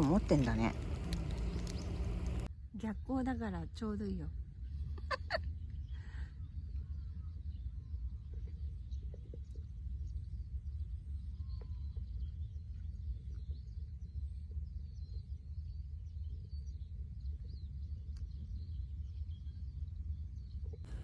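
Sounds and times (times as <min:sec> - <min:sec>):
low rumble: 0:00.0 - 0:02.5
small birds chirping: 0:00.0 - 0:02.5, 0:20.5 - 0:21.0.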